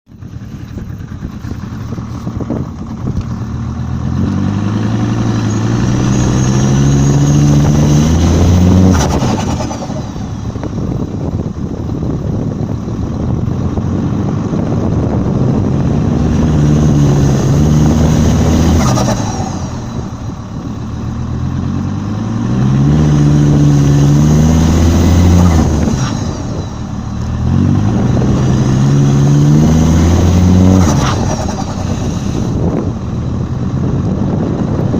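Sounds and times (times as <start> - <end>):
diesel engine accelerating: 0.1 - 34.9.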